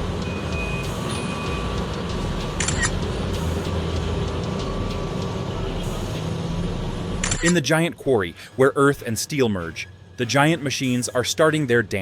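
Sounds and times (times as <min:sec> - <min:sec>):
background music: 0:00.0 - 0:12.0
heavy machinery engines rumbling: 0:00.0 - 0:12.0.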